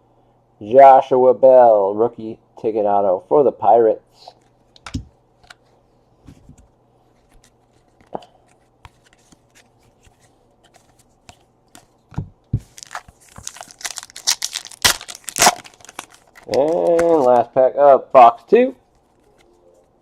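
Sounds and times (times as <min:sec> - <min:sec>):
foil wrapper crinkling and tearing: 0:12.7 - 0:17.5.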